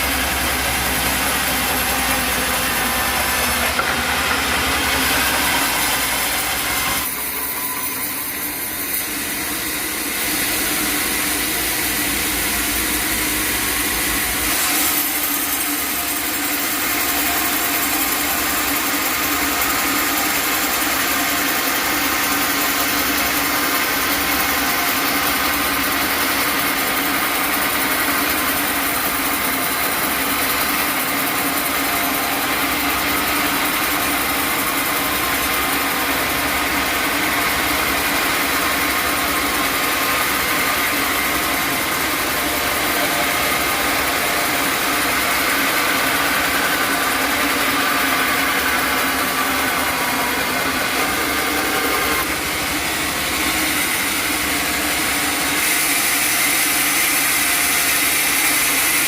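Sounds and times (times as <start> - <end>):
sawmill saw running: 0.0 - 59.0.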